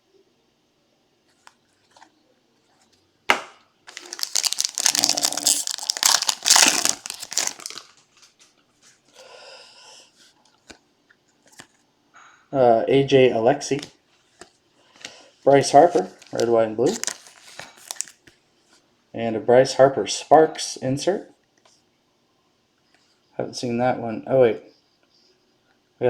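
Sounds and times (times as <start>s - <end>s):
foil wrapper tearing and crinkling: 3.9s - 8.2s, 15.8s - 18.2s.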